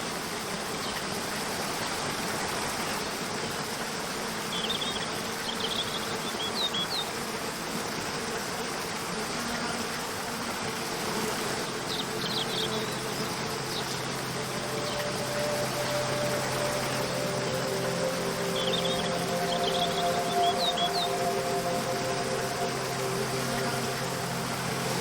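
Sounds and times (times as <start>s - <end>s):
faint soft background music: 9.4s - 25.0s
waterfall rushing: 10.5s - 25.0s
high bird chirps: 11.8s - 25.0s.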